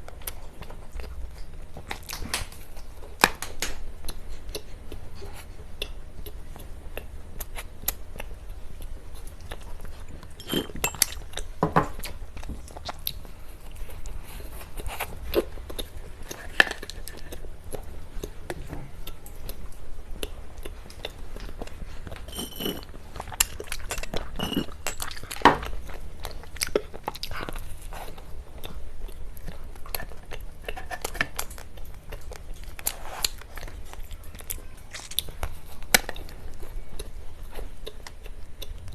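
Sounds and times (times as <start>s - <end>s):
wet chewing and biting: 0.0s - 38.9s
cutlery clinking: 10.4s - 11.9s, 22.3s - 22.9s, 23.5s - 25.7s.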